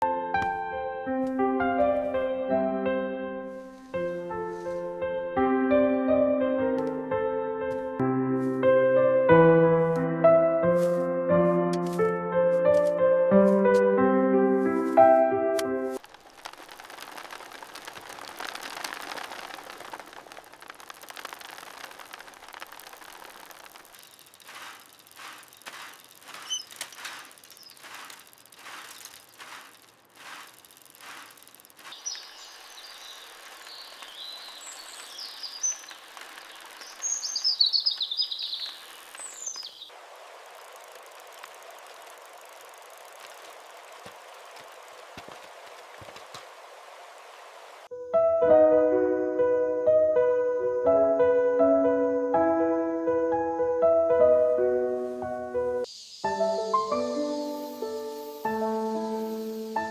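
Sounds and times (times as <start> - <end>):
footsteps crunching on gravel: 16.0 - 39.9, 43.1 - 46.7
small birds chirping: 16.0 - 47.9, 55.8 - 59.9
soft breeze hiss: 16.0 - 47.9, 54.6 - 59.9.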